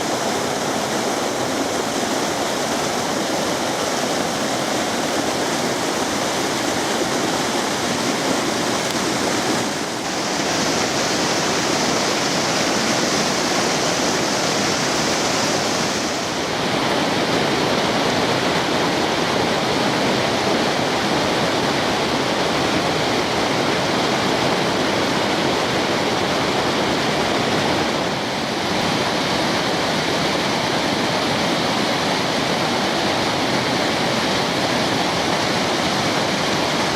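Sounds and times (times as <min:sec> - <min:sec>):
stream rushing over rocks: 0:00.0 - 0:36.9.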